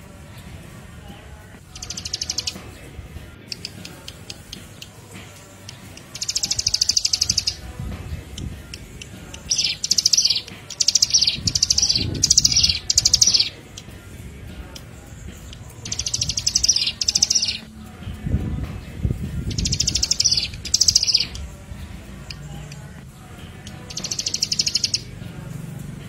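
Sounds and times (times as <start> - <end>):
songbird high trills: 1.7 - 2.6, 5.7 - 7.7, 8.4 - 13.9, 15.5 - 17.7, 19.5 - 21.4, 23.7 - 25.1.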